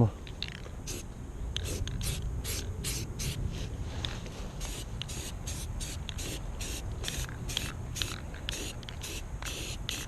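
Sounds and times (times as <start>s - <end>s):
spray paint hissing bursts: 0.8s - 3.4s, 4.6s - 10.0s.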